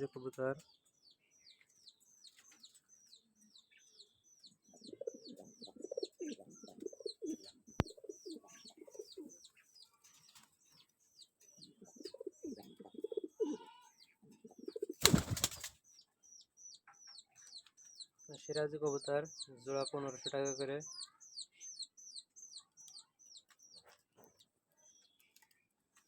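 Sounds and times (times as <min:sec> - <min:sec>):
small birds chirping: 0:00.0 - 0:26.0
pigeons cooing: 0:04.7 - 0:09.5, 0:11.6 - 0:15.6.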